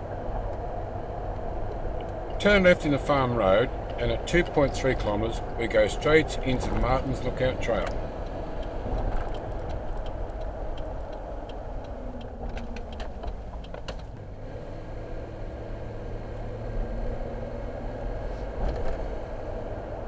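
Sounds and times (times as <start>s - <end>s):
car road and engine rumble: 0.0s - 20.0s
turn indicator ticking: 0.2s - 14.4s.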